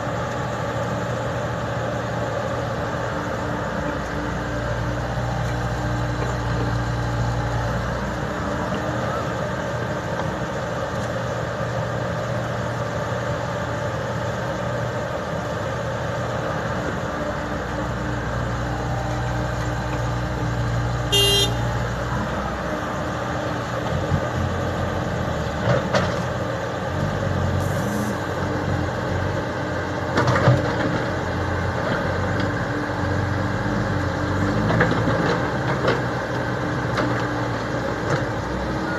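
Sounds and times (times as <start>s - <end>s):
excavator diesel engine: 0.0s - 38.9s
short high-pitched squeal: 27.6s - 28.2s.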